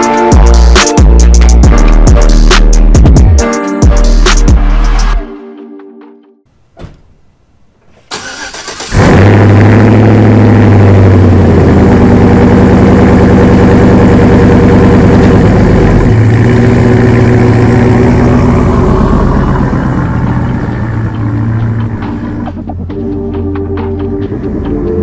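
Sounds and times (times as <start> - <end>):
truck engine cranking and idling: 8.0 - 25.0.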